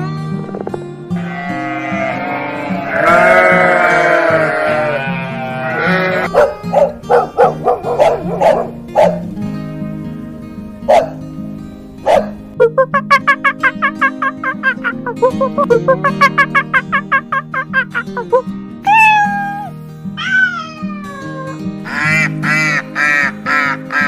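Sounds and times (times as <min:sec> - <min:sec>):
background music: 0:00.0 - 0:24.0
animal calls: 0:00.6 - 0:09.3.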